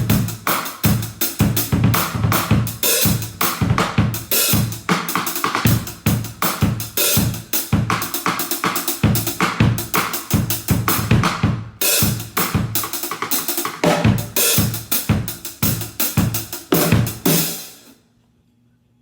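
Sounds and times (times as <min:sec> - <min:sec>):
acoustic drum kit playing: 0:00.0 - 0:17.9.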